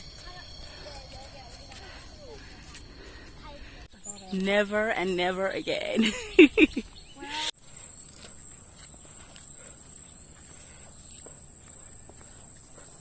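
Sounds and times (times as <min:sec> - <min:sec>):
insects singing high note: 0:00.0 - 0:06.0.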